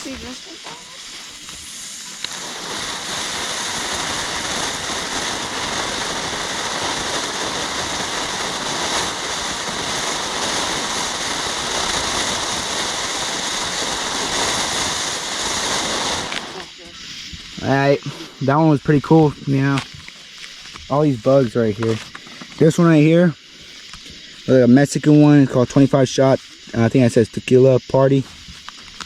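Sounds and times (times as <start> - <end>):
firework fountain hissing: 0.0 - 29.0.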